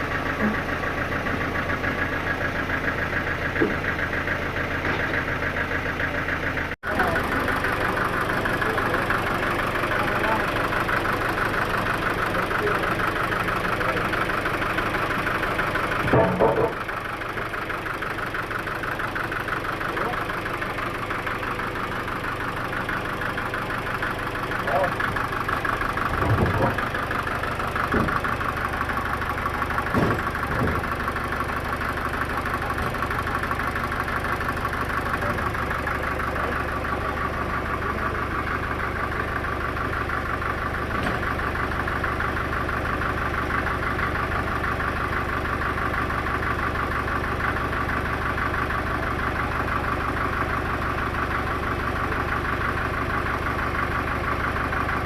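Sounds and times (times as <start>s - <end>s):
engine idling: 0.0s - 55.0s
knocks: 16.0s - 16.8s, 27.9s - 28.2s, 29.9s - 30.9s.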